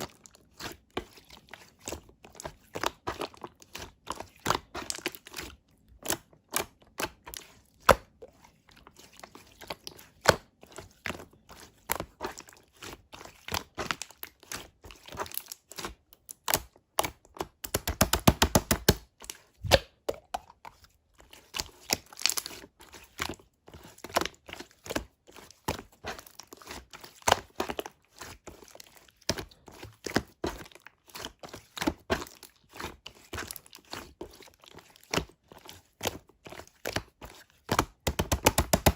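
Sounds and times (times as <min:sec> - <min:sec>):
slime clicking and popping: 0:17.6 - 0:19.0.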